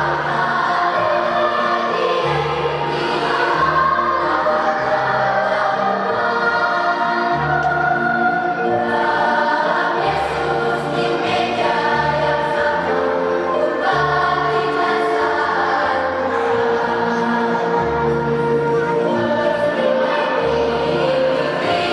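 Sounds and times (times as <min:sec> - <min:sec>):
children's choir singing: 0:00.0 - 0:21.9
instrumental accompaniment: 0:00.0 - 0:21.9.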